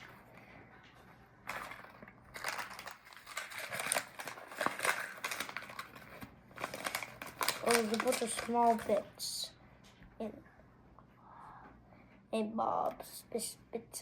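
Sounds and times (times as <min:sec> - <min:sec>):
plastic bag crinkling: 0:01.4 - 0:09.2.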